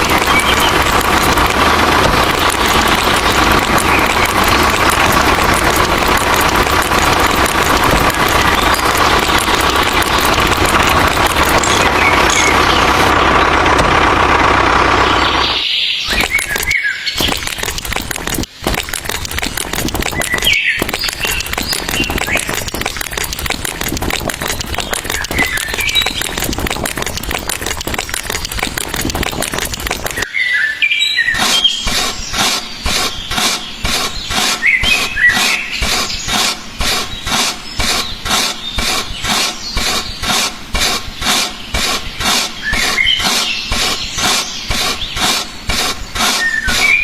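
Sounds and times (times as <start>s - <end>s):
birds chirping: 0.0s - 13.8s, 14.8s - 47.0s
fast rhythmic clatter: 0.0s - 30.3s, 31.4s - 47.0s
noisy background: 0.0s - 30.4s.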